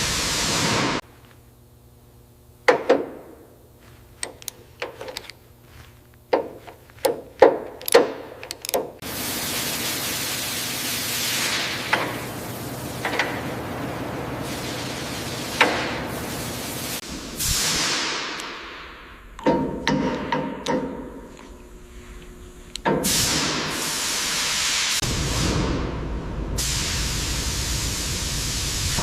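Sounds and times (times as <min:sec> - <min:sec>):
hissing spray: 0:09.0 - 0:13.0, 0:23.0 - 0:25.9, 0:26.6 - 0:29.0.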